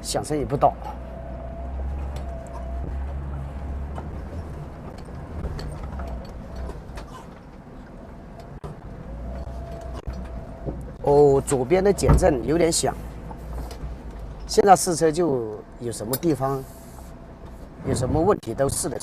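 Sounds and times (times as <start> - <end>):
engine and drivetrain rumble: 0.0 - 19.0
chassis knocks and creaks: 0.8 - 14.6.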